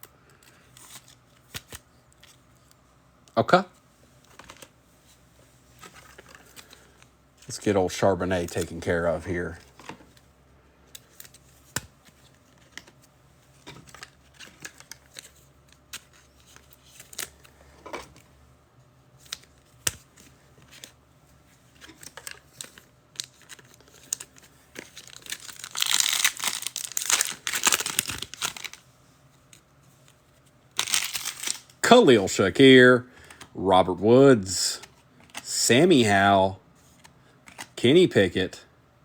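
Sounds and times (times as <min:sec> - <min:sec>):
foil wrapper crinkling and tearing: 0:21.8 - 0:28.9, 0:30.7 - 0:31.9
cards clicking and tapping: 0:37.0 - 0:37.8.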